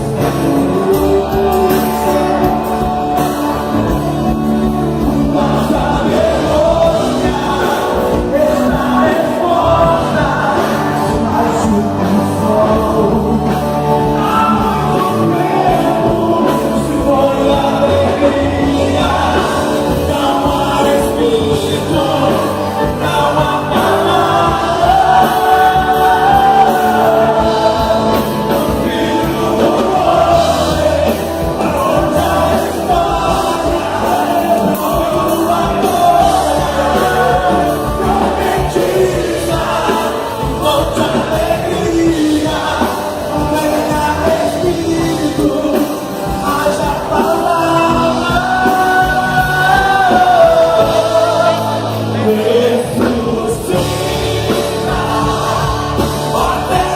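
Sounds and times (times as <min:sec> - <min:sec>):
gospel band: 0:00.0 - 0:56.9
people singing worship song: 0:00.0 - 0:56.9.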